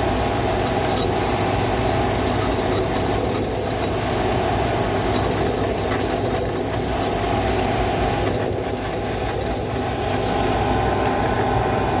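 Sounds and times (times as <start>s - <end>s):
spinning part grinding: 0.5s - 11.1s
high-pitched squeaks: 0.6s - 1.5s, 2.2s - 4.2s, 5.1s - 7.2s, 8.2s - 10.6s.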